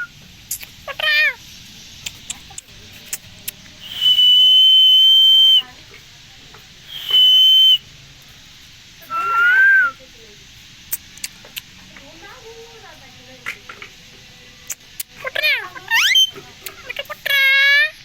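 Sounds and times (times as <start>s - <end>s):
parrot whistling: 3.8s - 5.7s, 6.9s - 7.8s, 9.0s - 10.0s, 15.9s - 16.3s
parrot warbling call: 6.9s - 7.8s, 9.1s - 10.0s, 15.9s - 16.3s.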